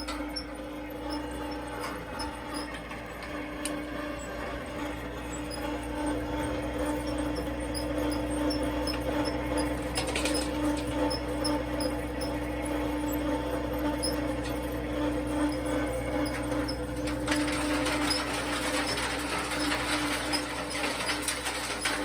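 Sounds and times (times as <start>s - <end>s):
machine hum: 0.0s - 22.0s
faint high squeaks: 13.1s - 22.0s.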